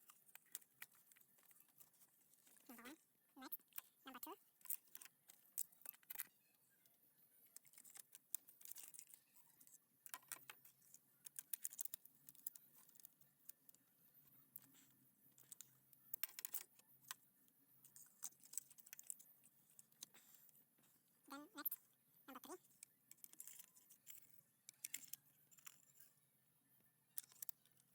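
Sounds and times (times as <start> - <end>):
small clicks of hand work: 7.5 - 13.8, 22.8 - 26.2, 27.1 - 27.9.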